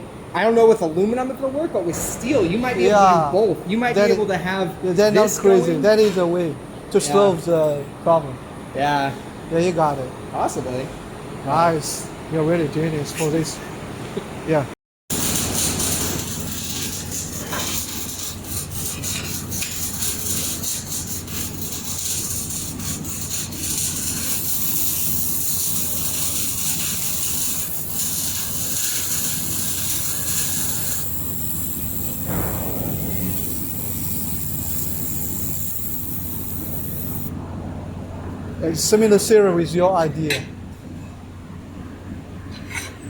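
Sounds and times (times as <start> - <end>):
laser welder hissing and humming: 15.1 - 37.3
crackling clicks: 23.3 - 37.3.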